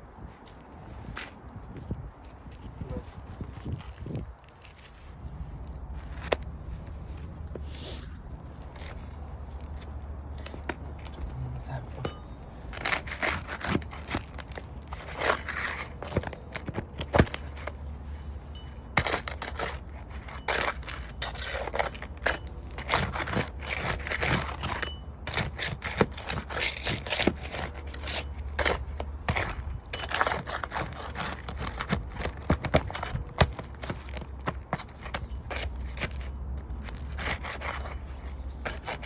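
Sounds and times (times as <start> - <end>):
tools scraping and clicking: 12.0 - 39.0.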